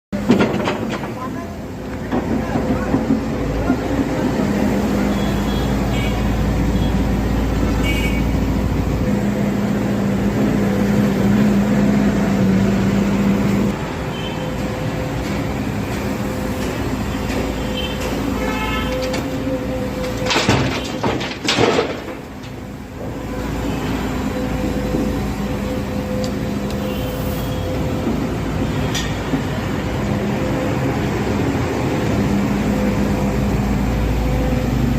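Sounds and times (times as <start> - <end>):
excavator diesel engine droning: 0.2 - 21.4, 22.0 - 34.9
load crashing into truck: 20.0 - 22.6.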